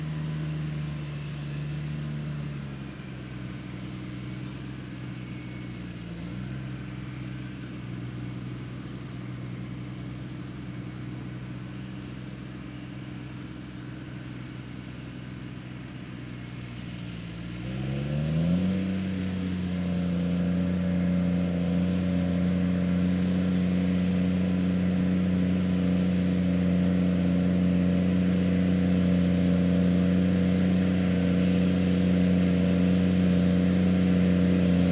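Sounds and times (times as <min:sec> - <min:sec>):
tractor engine under load: 0:00.0 - 0:34.9.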